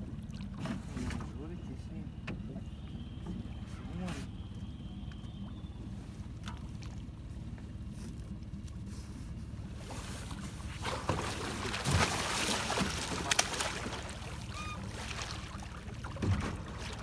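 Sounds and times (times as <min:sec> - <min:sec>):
steady low rumble: 0:00.0 - 0:17.0
fish thrashing water splashing: 0:10.0 - 0:17.0.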